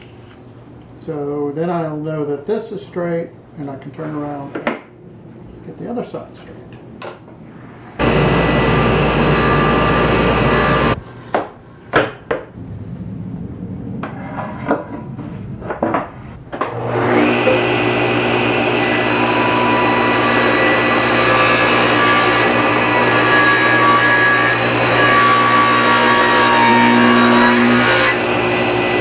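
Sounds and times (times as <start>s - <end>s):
power tool running: 8.0s - 11.0s, 16.6s - 29.0s
table saw motor running: 8.0s - 11.0s, 16.7s - 29.0s.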